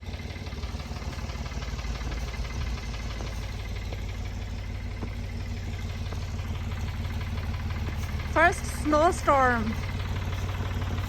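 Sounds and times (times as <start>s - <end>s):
tractor engine idling: 0.0s - 11.0s.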